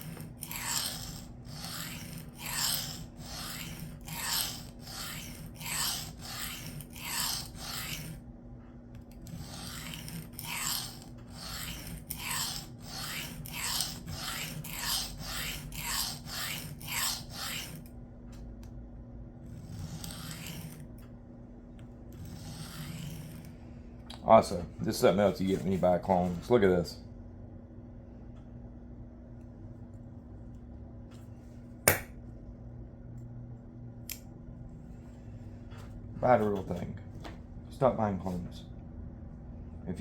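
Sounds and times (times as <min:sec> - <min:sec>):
knife rasping on diamond plate: 0:00.0 - 0:08.2, 0:09.2 - 0:17.9, 0:19.6 - 0:20.9, 0:22.2 - 0:23.6.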